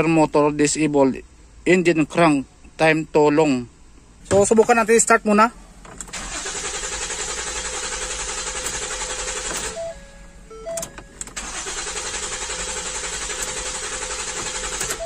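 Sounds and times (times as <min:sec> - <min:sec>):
car engine cranking without starting: 0:04.2 - 0:15.0.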